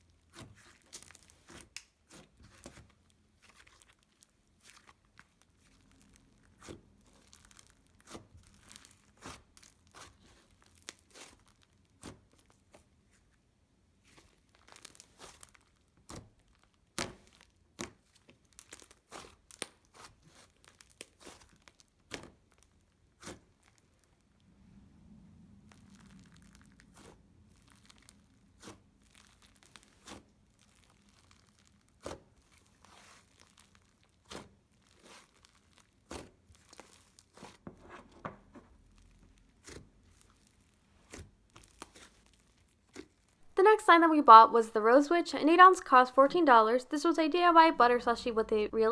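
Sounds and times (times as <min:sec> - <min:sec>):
slime popping and crackling: 0:03.4 - 0:12.6, 0:14.3 - 0:24.1, 0:25.7 - 0:37.6, 0:38.9 - 0:43.4.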